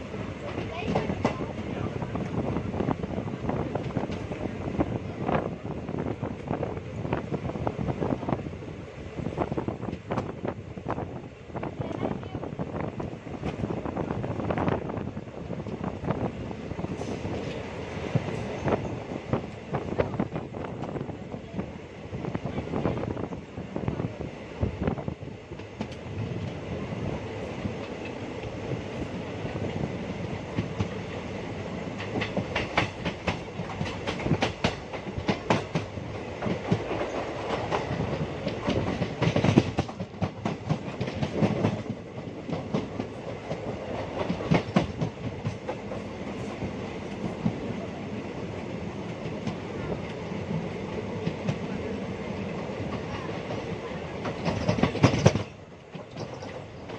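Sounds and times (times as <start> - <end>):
wheels clickety-clack on rail joints: 0.0 - 21.7, 22.4 - 56.9
train wheels rumbling on track: 0.0 - 56.9.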